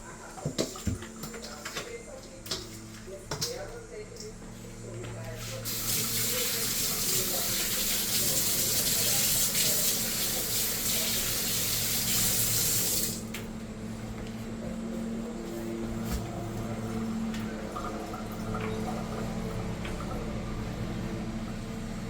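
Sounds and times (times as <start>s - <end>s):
tap water running into sink: 0.4s - 1.8s, 5.6s - 13.4s, 17.3s - 20.3s.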